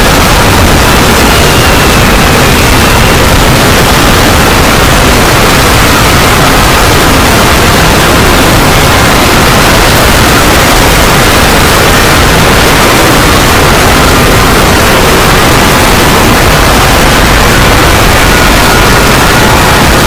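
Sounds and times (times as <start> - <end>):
heavily distorted noise: 0.0 - 20.0.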